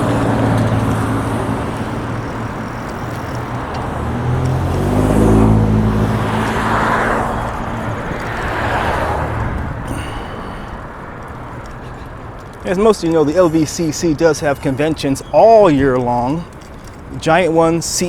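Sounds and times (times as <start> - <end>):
passing engine note: 0.0 - 12.1
car engine and tyre noise: 0.0 - 18.0.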